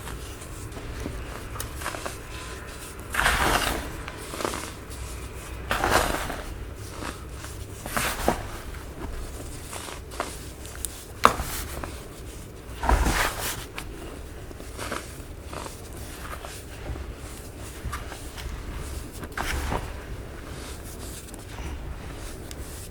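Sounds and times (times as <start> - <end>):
baking soda crunching: 0.0 - 22.9
small crackles: 0.0 - 22.9.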